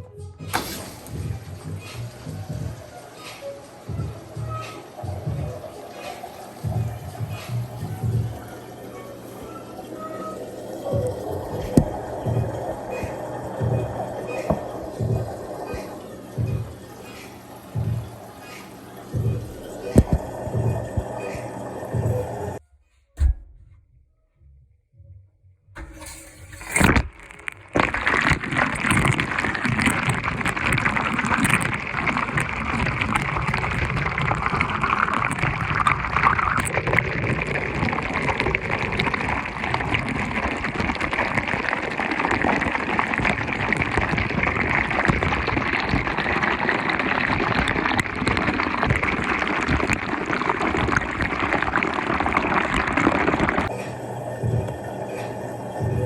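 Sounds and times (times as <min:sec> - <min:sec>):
water filling drum: 0:00.4 - 0:22.6, 0:25.8 - 0:56.0
washing machine clicks: 0:25.8 - 0:27.6.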